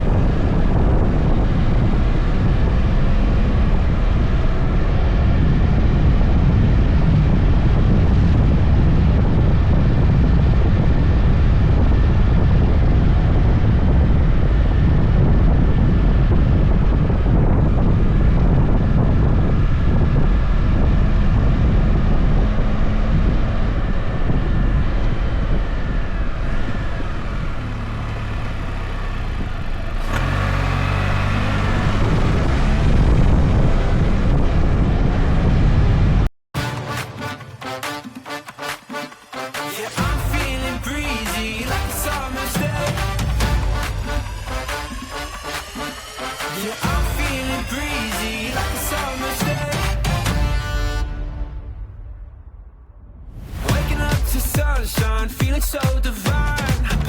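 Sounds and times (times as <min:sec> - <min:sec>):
engine running at speed: 0:00.0 - 0:36.3, 0:39.9 - 0:51.4
wind buffeting microphone: 0:00.0 - 0:36.3.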